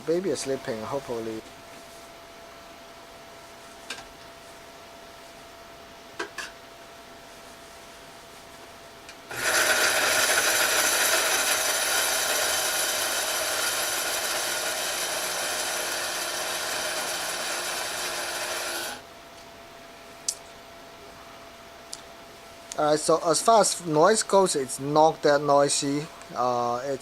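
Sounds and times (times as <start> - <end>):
electric coffee grinder grinding: 9.3 - 19.0.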